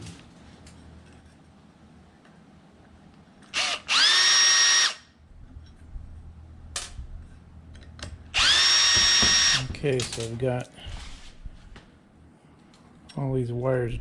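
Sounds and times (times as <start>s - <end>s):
power tool motor whining: 3.5s - 5.0s, 8.4s - 9.7s.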